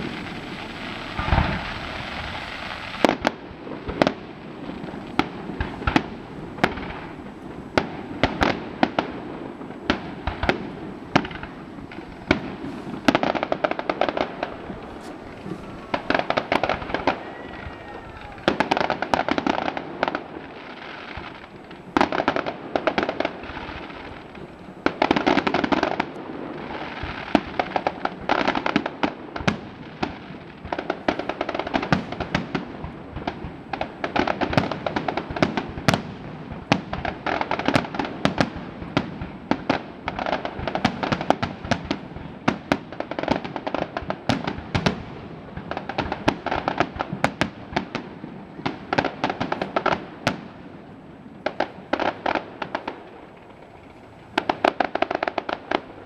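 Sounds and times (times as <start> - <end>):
fireworks bangs and crackling: 0.0 - 56.0.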